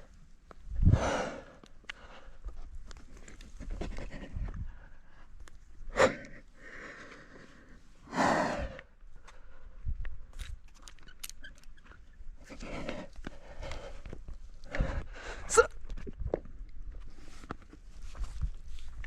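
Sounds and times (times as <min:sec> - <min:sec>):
person breathing hard: 0:00.8 - 0:02.6, 0:03.6 - 0:10.0, 0:12.4 - 0:15.7.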